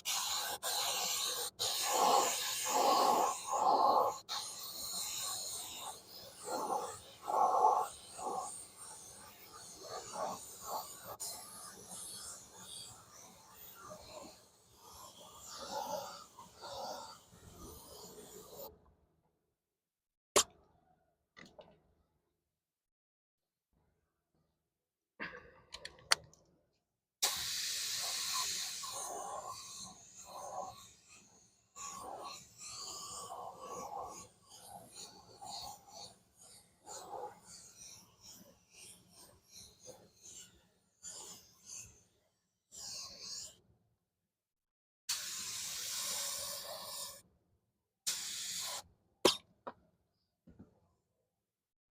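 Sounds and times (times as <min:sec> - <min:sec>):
spray paint hissing: 0:00.0 - 0:18.6, 0:27.2 - 0:39.7, 0:45.1 - 0:47.2, 0:48.1 - 0:49.4
paint spray hiss: 0:00.1 - 0:05.2, 0:27.2 - 0:30.6, 0:45.1 - 0:47.2, 0:48.1 - 0:48.8.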